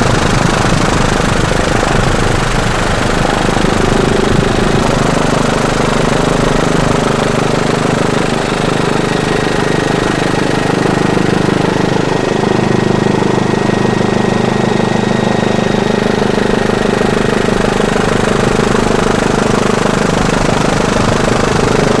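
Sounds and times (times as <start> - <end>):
engine droning steadily: 0.0 - 22.0.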